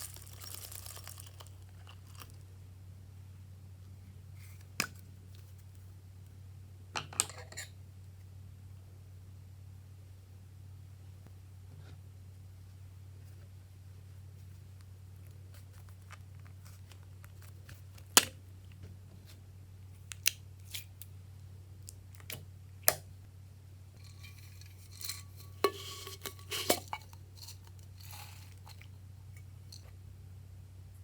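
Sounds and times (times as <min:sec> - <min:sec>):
crisp snipping and crackling: 0:00.0 - 0:02.4
steady low hum: 0:07.8 - 0:31.0.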